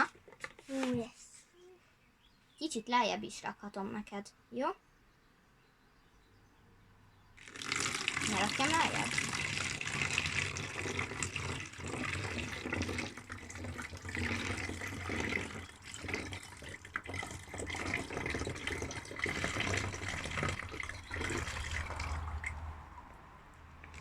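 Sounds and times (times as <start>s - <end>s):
water poured into plastic bottle: 7.4s - 22.8s, 23.8s - 24.0s.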